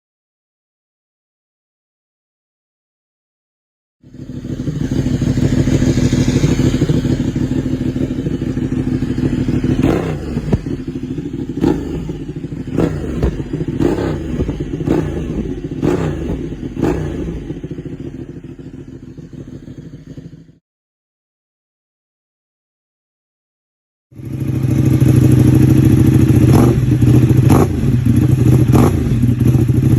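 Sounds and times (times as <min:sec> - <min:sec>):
motorcycle engine revving: 0:04.0 - 0:20.6, 0:24.2 - 0:29.9
exhaust cracks: 0:05.8 - 0:18.1.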